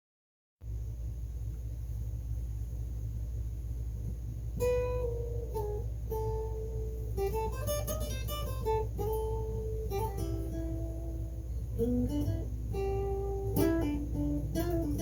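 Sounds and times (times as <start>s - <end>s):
low hum: 0.6s - 15.0s
guitar picked melody: 4.5s - 15.0s.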